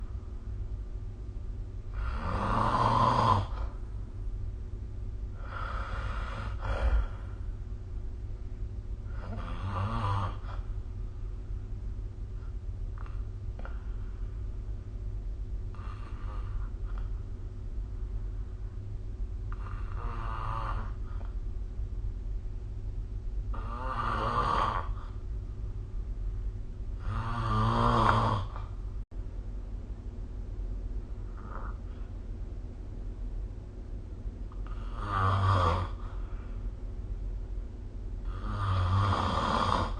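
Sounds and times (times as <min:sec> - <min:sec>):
steady low hum: 0:00.0 - 0:39.9
person snoring: 0:01.9 - 0:03.8, 0:05.4 - 0:07.4, 0:09.1 - 0:10.7, 0:15.7 - 0:17.1, 0:19.5 - 0:21.3, 0:23.5 - 0:25.2, 0:27.0 - 0:28.8, 0:31.3 - 0:31.9, 0:34.5 - 0:36.2, 0:38.2 - 0:39.9.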